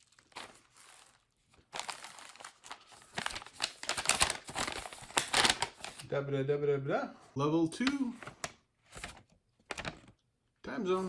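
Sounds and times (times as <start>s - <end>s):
packaging crinkling and rustling: 0.0s - 6.1s, 8.1s - 10.2s.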